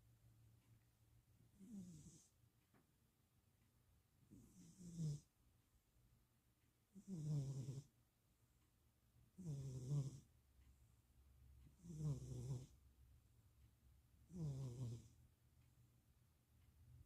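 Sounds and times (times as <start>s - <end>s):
cat snoring softly: 1.5s - 2.4s, 4.3s - 5.3s, 6.9s - 7.9s, 9.4s - 10.3s, 11.6s - 12.8s, 14.3s - 15.2s.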